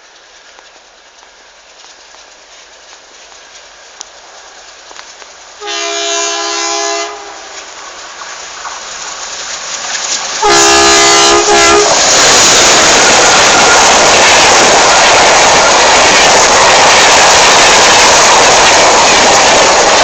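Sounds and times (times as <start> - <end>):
train rushing past: 1.4 - 20.0
train horn blasts: 5.6 - 7.7, 10.4 - 12.0.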